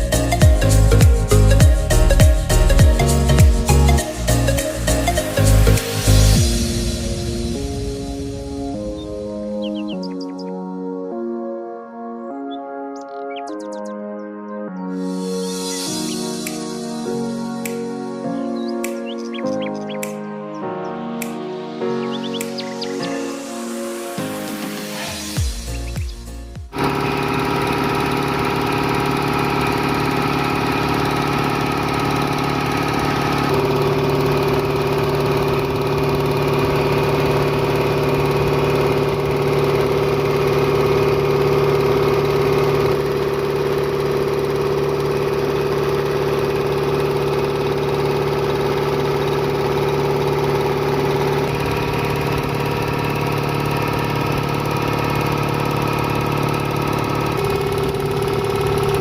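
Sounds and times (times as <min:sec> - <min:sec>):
air compressor humming: 0:25.4 - 0:59.0.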